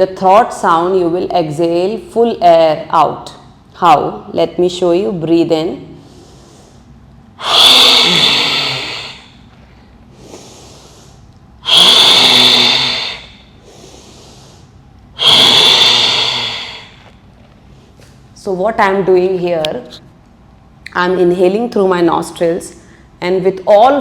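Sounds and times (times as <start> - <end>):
forceful breath exhalations: 6.0 - 9.4, 10.1 - 17.1
nose inhalations: 6.0 - 17.1.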